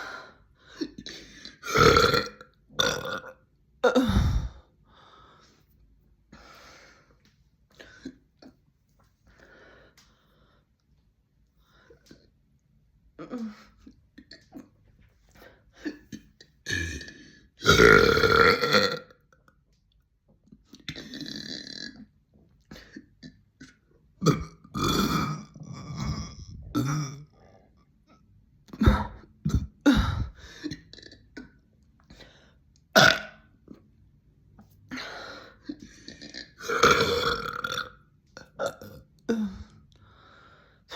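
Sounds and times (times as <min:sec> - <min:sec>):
person burping deeply: 0:00.8 - 0:04.6, 0:16.1 - 0:19.3, 0:20.8 - 0:22.1, 0:22.7 - 0:27.4, 0:28.7 - 0:31.6, 0:32.9 - 0:33.5, 0:35.8 - 0:39.8.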